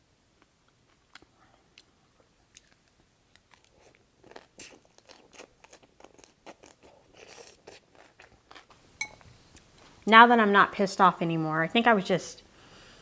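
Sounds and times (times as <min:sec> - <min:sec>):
chewing crunchy cucumber: 0:00.6 - 0:08.8.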